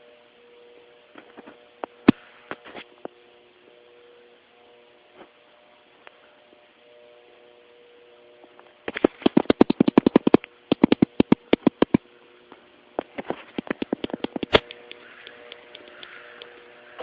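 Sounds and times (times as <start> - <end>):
airsoft guns firing: 9.0 - 12.0.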